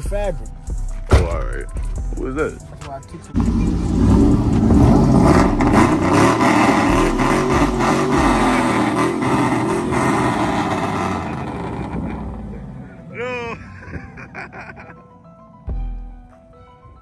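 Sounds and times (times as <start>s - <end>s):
motor vehicle running: 1.0s - 13.1s.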